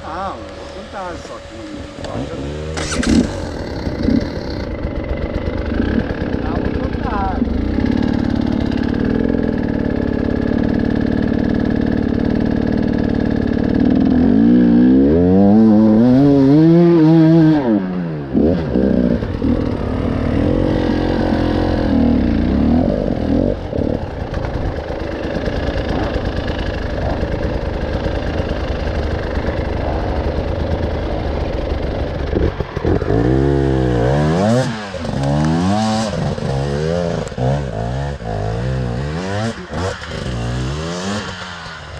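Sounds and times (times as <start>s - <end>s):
motorcycle engine revving: 0.0s - 41.9s.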